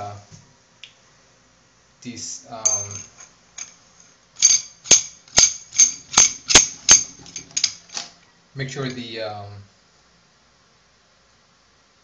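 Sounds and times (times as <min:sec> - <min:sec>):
metal drain parts clinking: 0:02.7 - 0:03.8, 0:04.4 - 0:08.0.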